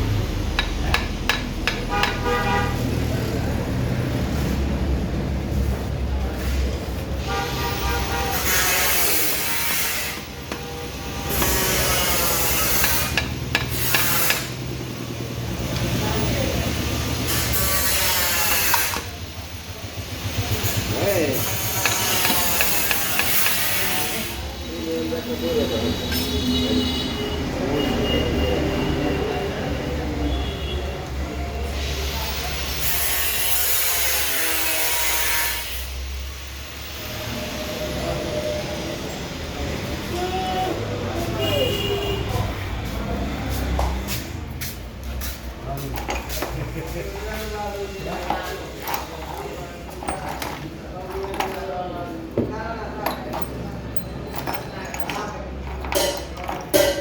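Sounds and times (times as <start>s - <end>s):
sharp metallic clicks and taps: 0.5s - 2.2s
power tool harsh hissing rasp: 7.2s - 14.7s.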